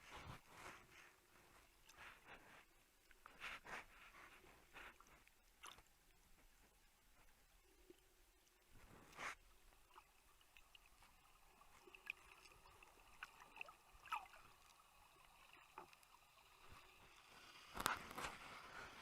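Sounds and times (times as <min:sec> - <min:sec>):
water clicks and gurgles: 0:00.0 - 0:19.0
rush of water: 0:08.8 - 0:19.0.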